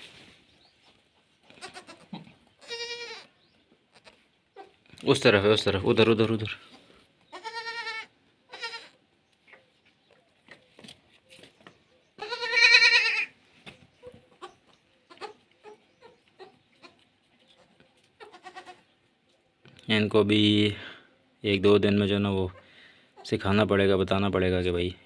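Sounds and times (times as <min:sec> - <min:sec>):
goats bleating: 0:01.5 - 0:03.3, 0:07.3 - 0:09.0, 0:12.2 - 0:13.3, 0:18.2 - 0:18.9.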